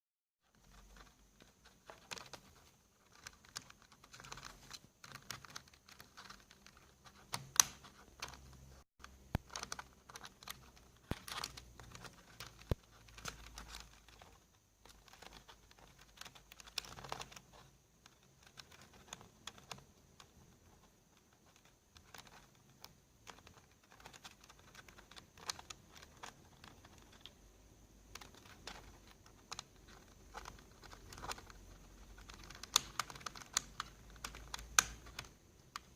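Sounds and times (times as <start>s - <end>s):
bird pecking at keyboard keys: 0.5s - 35.9s.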